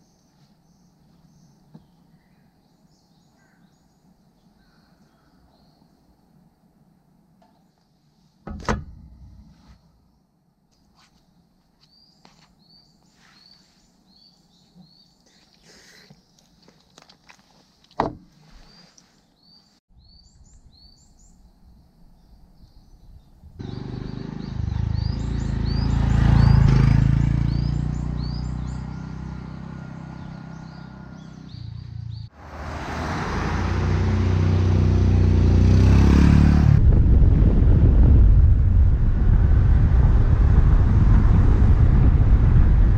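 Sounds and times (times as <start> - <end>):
birds chirping: 0.0 - 6.4, 11.8 - 32.3
motorcycle engine running: 23.6 - 32.3
wind over microphone: 36.6 - 42.9.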